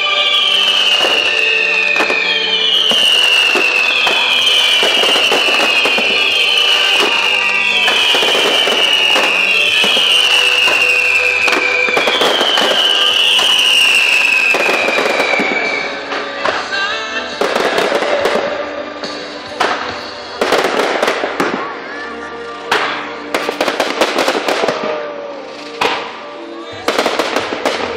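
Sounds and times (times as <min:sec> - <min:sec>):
firework bangs: 0:00.0 - 0:16.7, 0:17.4 - 0:21.8, 0:22.7 - 0:27.9
firework whistles: 0:00.0 - 0:16.7, 0:23.3 - 0:26.2
fireworks crackling: 0:00.0 - 0:27.9
music: 0:00.0 - 0:27.9.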